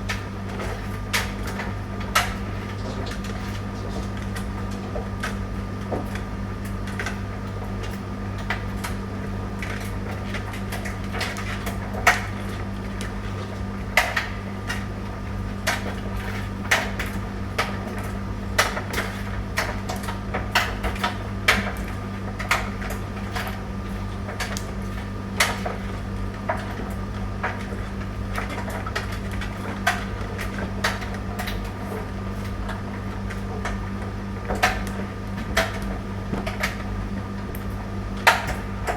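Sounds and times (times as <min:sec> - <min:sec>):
tumble dryer motor hum: 0:00.0 - 0:38.9
clicks and knocks from tumbling drum: 0:15.6 - 0:38.9.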